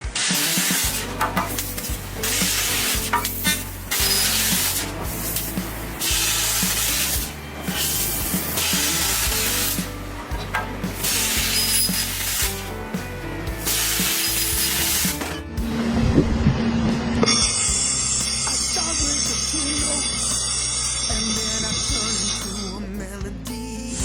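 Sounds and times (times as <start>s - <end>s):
welding hiss and crackle: 0.0s - 12.7s, 13.6s - 15.4s
welding machine hum: 0.0s - 16.9s.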